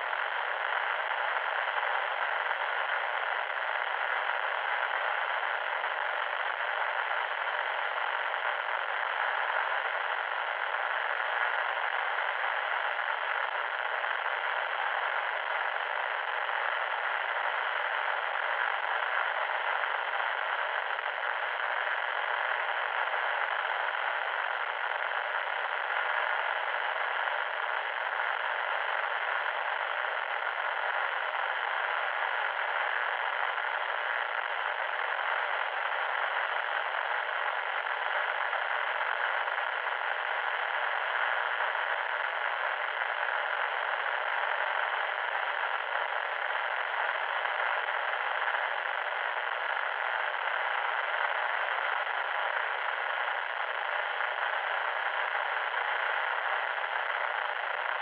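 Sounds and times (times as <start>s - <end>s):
loud static hiss: 0.0s - 58.0s.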